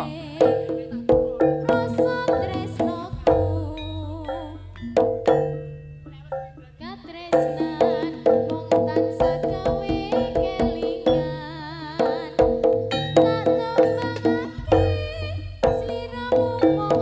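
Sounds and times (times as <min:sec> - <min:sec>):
wavering high melody: 0:00.0 - 0:08.6, 0:11.0 - 0:15.3
drum beat: 0:00.0 - 0:17.0.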